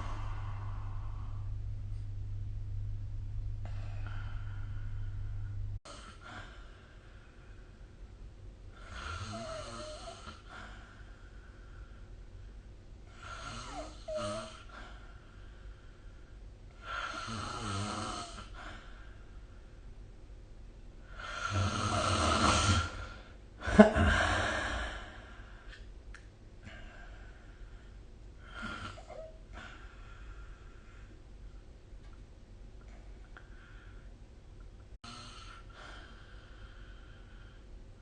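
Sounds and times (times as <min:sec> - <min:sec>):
person snoring: 0:00.0 - 0:01.6, 0:08.8 - 0:10.5, 0:13.2 - 0:14.7, 0:16.8 - 0:18.6, 0:21.2 - 0:23.2.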